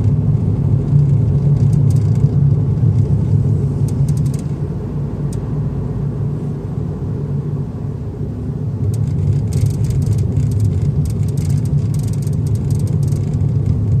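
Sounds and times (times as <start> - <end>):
car engine low rumble: 0.0 - 14.0
rapid high clicking rattle: 3.8 - 4.5, 8.9 - 14.0.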